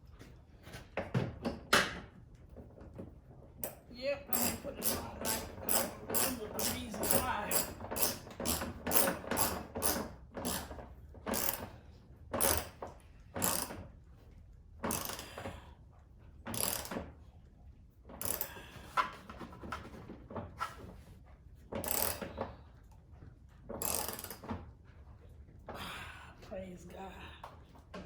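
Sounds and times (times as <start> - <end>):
ratchet wrench clicking: 3.6 - 11.7, 12.4 - 12.8, 13.4 - 13.8, 14.9 - 15.4, 16.5 - 17.0, 18.2 - 18.6, 21.8 - 22.3, 23.8 - 24.5.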